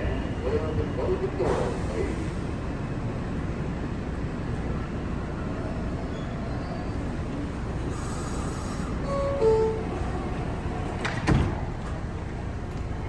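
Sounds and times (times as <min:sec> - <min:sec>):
subway train rumble and hiss: 0:00.0 - 0:13.0
train doors closing: 0:01.3 - 0:02.9, 0:05.9 - 0:13.0.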